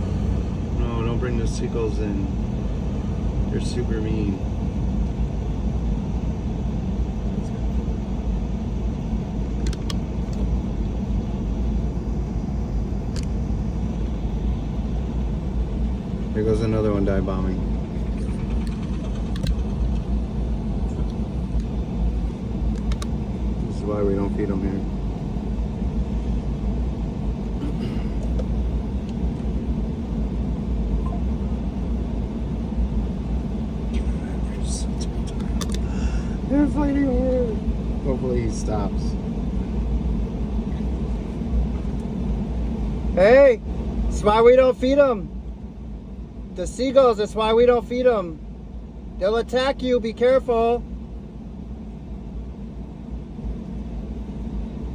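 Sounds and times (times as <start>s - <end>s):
steady low rumble: 0.0s - 54.9s
sharp clicks: 9.6s - 10.4s, 18.5s - 20.1s, 22.7s - 23.1s.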